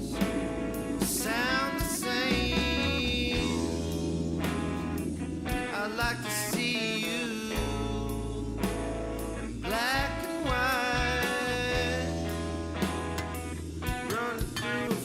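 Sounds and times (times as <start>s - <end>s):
guitar: 0.0s - 15.0s
steady bass line: 0.0s - 15.0s
person singing: 1.0s - 4.0s, 5.5s - 8.6s, 9.6s - 12.8s, 14.0s - 15.0s.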